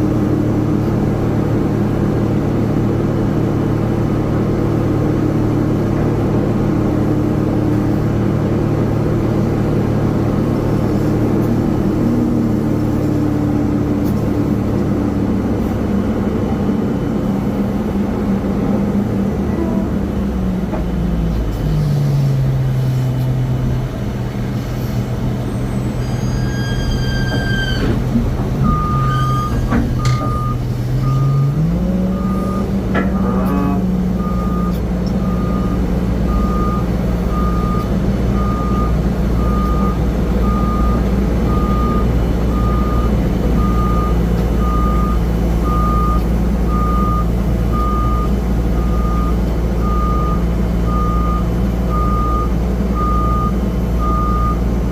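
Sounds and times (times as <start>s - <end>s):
low engine rumble: 0.0s - 54.9s
vehicle reversing alarm beeping: 28.6s - 54.7s.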